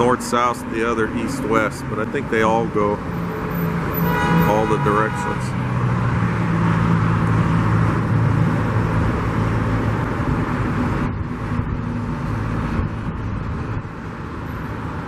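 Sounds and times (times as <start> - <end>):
freeway traffic rushing: 0.0 - 15.0
low engine hum: 5.6 - 15.0.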